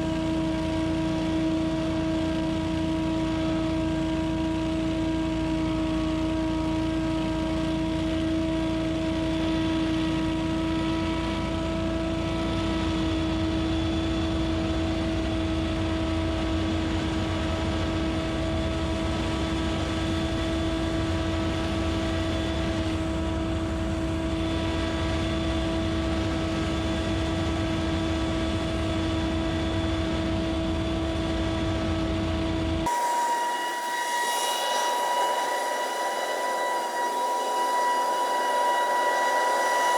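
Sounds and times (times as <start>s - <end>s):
leaf blower running: 32.9s - 39.9s.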